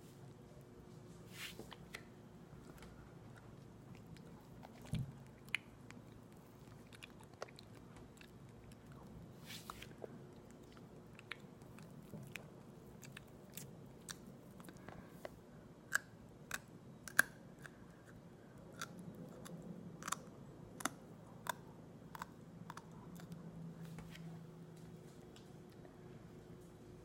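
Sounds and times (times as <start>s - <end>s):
wet chewing mouth clicks: 10.4s - 15.3s.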